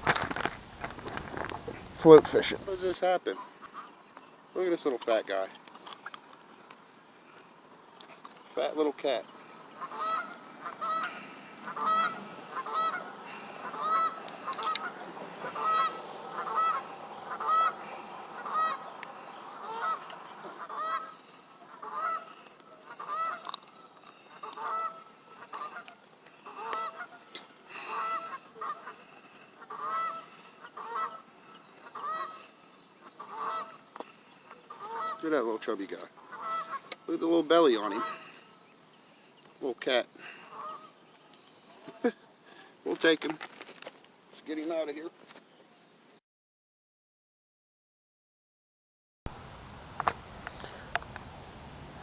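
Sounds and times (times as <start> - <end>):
geese honking: 2.7 - 4.0, 8.1 - 39.3, 39.9 - 42.2.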